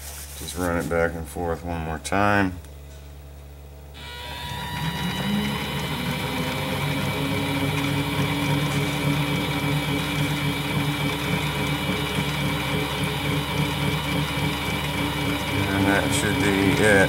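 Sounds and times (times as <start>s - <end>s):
lathe motor whine: 3.9s - 17.0s.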